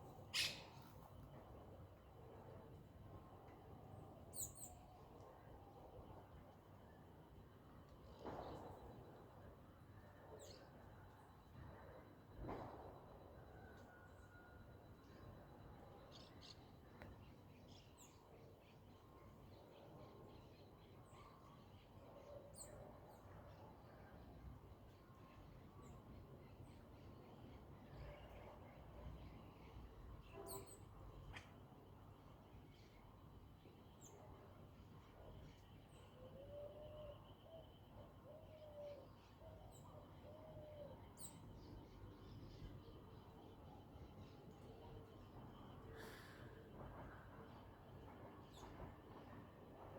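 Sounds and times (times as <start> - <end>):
faint bird chirps: 0.2 - 1.2, 8.1 - 23.1, 27.8 - 31.6
outdoor hush: 35.0 - 49.8.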